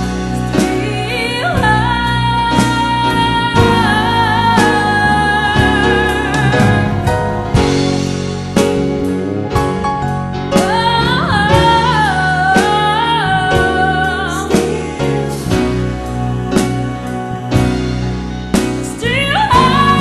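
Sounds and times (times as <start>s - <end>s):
person singing long sliding notes: 0.5s - 7.9s.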